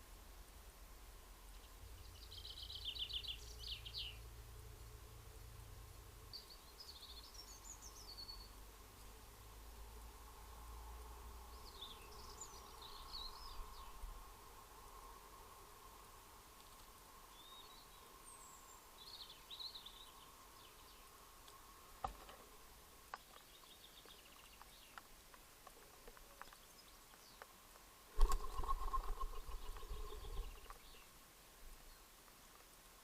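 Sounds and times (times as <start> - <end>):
faint steady tone: 0.0 - 24.2
faint high bird calls: 28.2 - 31.2.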